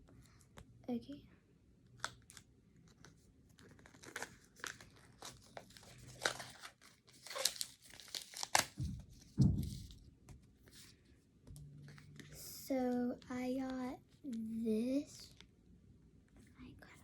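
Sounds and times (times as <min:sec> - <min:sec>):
paper crinkling and tearing: 0:02.1 - 0:08.9
dull handling thumps: 0:08.8 - 0:10.0.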